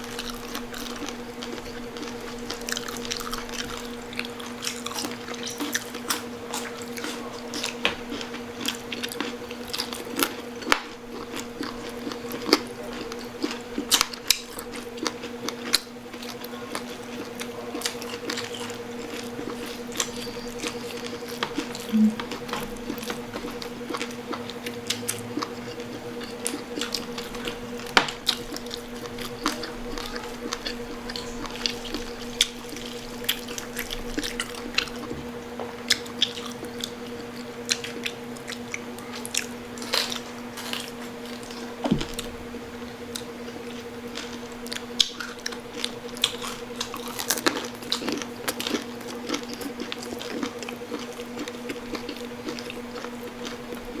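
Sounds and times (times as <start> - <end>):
chewing and crunching crispy pork skin: 0.0 - 54.0
low hum: 18.4 - 47.1.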